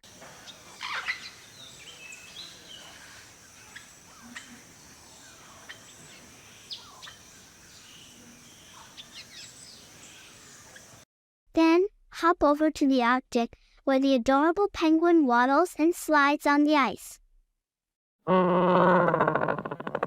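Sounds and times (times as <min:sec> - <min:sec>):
steady background hiss: 0:00.0 - 0:11.0.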